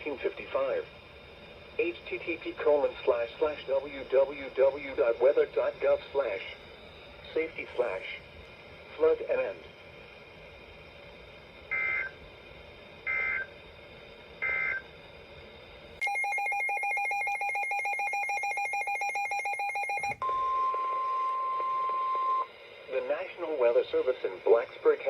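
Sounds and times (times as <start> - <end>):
warbling data bursts: 1.8 - 9.6
steady alarm tone: 11.6 - 12.3, 13.0 - 13.6, 14.4 - 14.9, 16.0 - 22.5.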